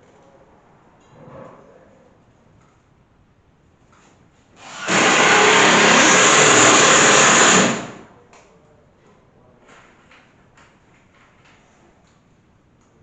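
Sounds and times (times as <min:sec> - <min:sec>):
electric drill motor: 0:04.6 - 0:08.0.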